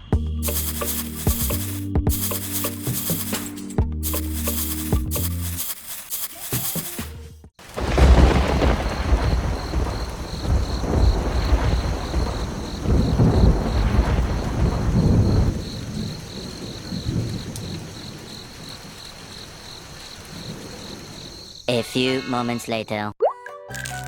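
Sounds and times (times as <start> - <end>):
steady rain: 0.4 - 6.9, 7.6 - 21.6
thunder rumbling: 7.6 - 21.6.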